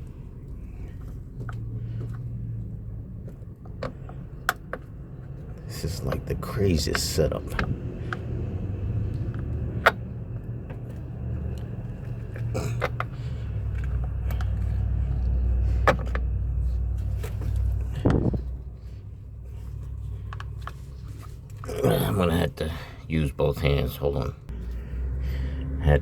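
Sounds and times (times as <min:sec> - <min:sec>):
low rumble: 0:07.4 - 0:21.8.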